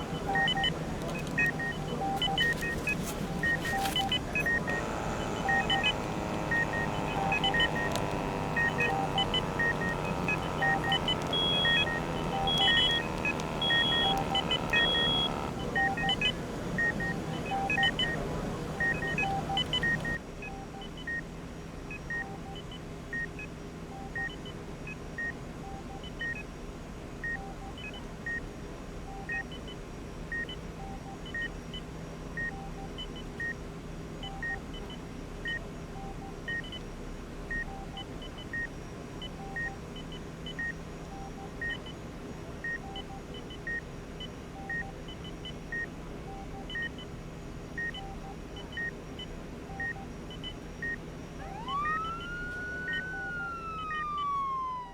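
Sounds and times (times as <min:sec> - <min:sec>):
monitor short beep: 0:00.0 - 0:08.0, 0:08.6 - 0:20.2
low equipment hum: 0:00.0 - 0:20.2, 0:47.8 - 0:54.9
paired high and low beeps: 0:00.0 - 0:20.2, 0:49.7 - 0:54.9.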